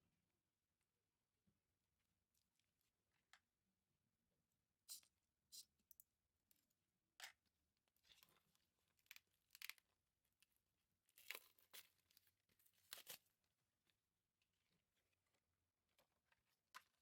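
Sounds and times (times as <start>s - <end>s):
packaging crinkling and rustling: 11.1s - 13.3s.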